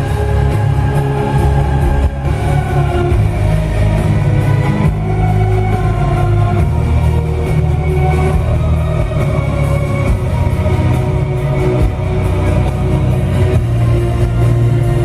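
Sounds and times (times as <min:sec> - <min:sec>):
loud music with heavy bass: 0:00.0 - 0:15.0.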